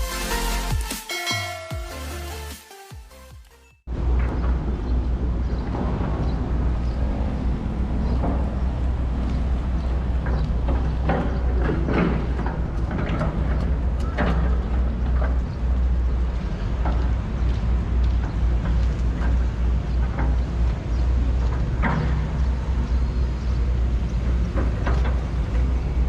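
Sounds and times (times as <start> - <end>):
diesel engines rumbling: 3.9 - 26.0
digging clanks and knocks: 9.9 - 15.8, 18.2 - 23.2.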